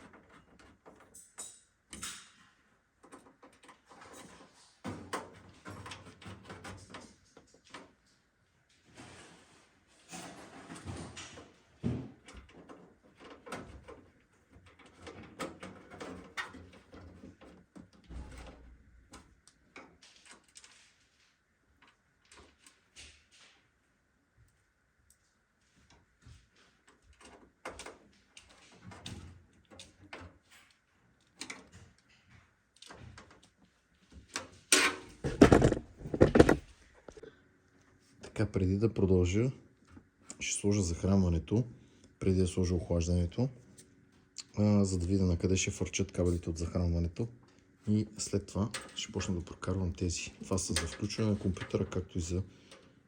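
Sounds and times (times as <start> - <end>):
parts clicking in metal case: 34.8 - 37.2
loud clatter: 35.3 - 36.6.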